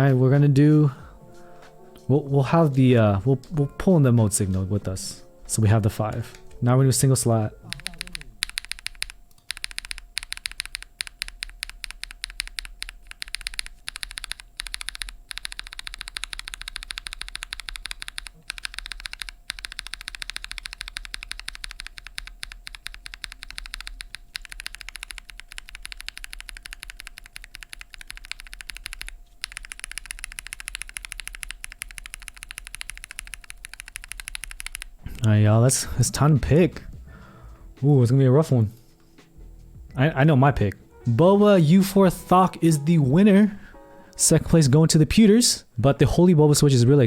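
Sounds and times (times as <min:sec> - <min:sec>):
typing on mechanical keyboard: 0:07.7 - 0:35.0.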